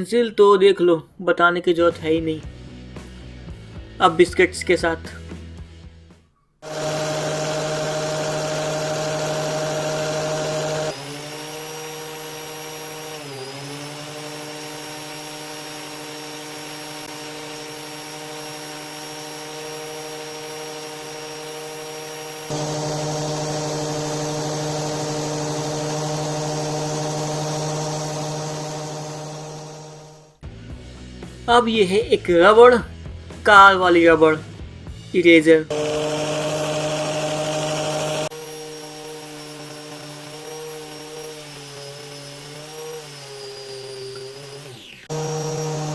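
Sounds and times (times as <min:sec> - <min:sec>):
angle grinder motor whine: 0:06.6 - 0:30.4, 0:35.7 - 0:45.9.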